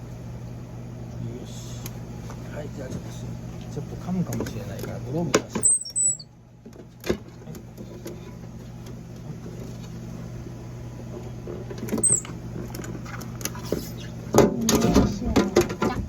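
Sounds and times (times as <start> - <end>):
squirrel chirp: 5.6 - 6.3, 12.0 - 12.3.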